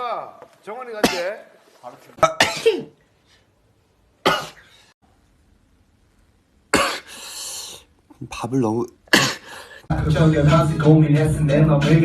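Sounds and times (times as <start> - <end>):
man sneezing: 2.3 - 2.9, 6.7 - 7.8, 9.1 - 9.6.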